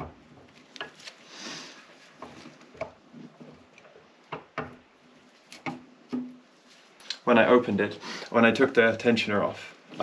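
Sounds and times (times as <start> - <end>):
soft rustle: 0.4 - 4.0, 6.5 - 7.2.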